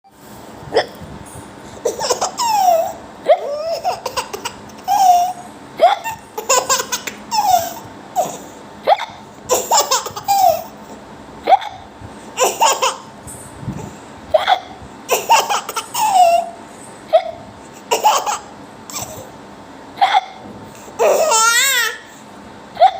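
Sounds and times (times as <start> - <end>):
baby laughing squeal: 1.8 - 10.8, 14.3 - 19.3, 21.0 - 22.1.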